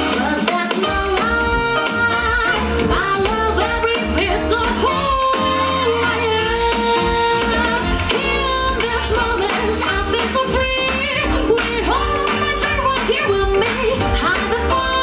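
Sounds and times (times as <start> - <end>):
upbeat song with singing: 0.0 - 15.0.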